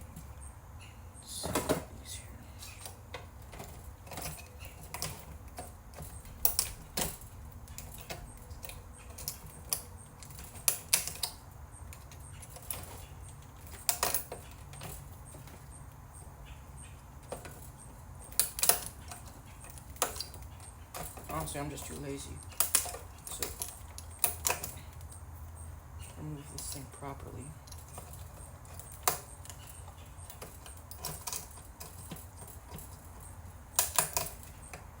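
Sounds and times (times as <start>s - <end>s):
low steady hum: 0.0s - 35.0s.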